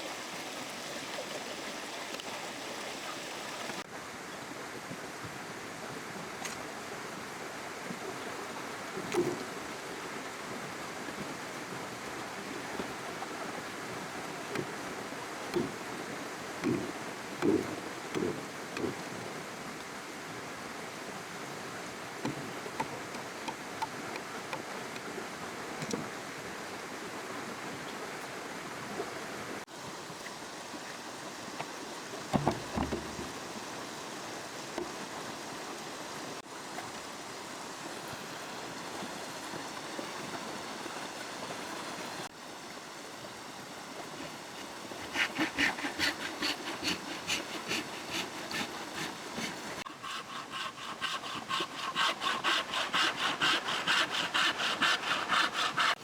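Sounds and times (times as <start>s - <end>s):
saw cutting wood: 15.5s - 15.9s, 16.5s - 19.0s, 44.9s - 56.0s
small knocks: 15.6s - 15.9s, 16.6s - 19.0s, 32.3s - 33.4s
river water rushing: 50.6s - 56.0s.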